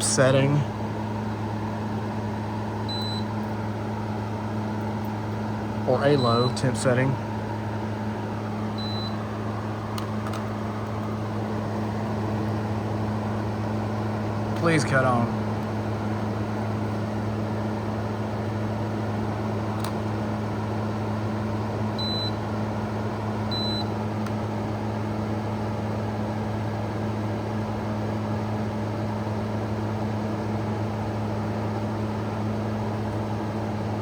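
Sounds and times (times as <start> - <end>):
air conditioner fan humming: 0.0 - 34.0
short high beeps: 2.9 - 3.3.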